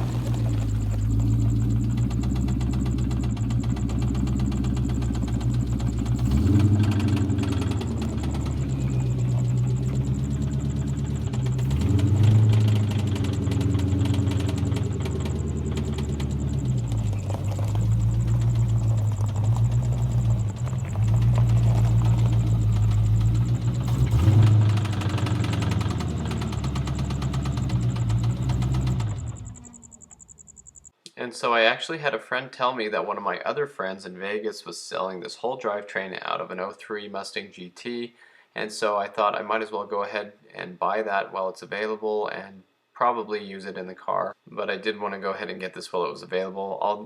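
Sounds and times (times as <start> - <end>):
engine knock: 0.0 - 30.8
car engine revving: 0.0 - 30.9.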